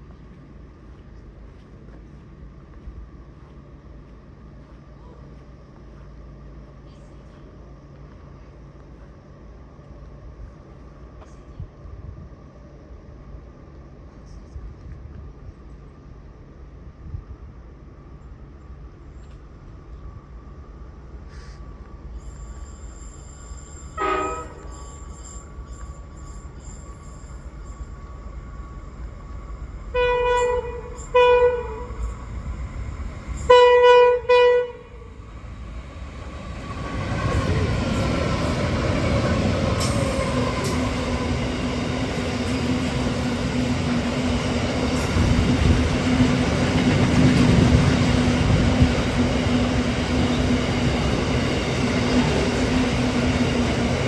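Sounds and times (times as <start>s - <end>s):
train passing rumble: 0.0s - 54.0s
locomotive horn blasts: 24.0s - 24.8s, 29.9s - 32.1s, 33.4s - 35.1s.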